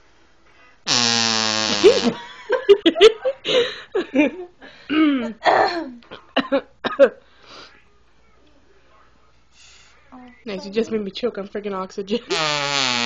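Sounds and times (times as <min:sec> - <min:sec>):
straw blown fart noise: 0:00.8 - 0:02.2, 0:12.3 - 0:13.0
people laughing: 0:01.8 - 0:04.5
person coughing: 0:04.9 - 0:07.2.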